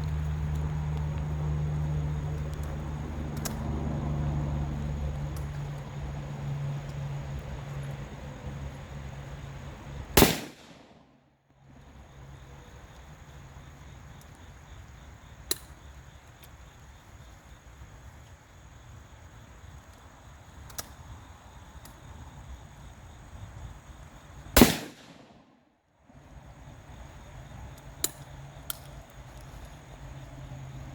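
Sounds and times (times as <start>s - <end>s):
loud gunshots: 10.2s - 11.0s, 24.6s - 25.4s.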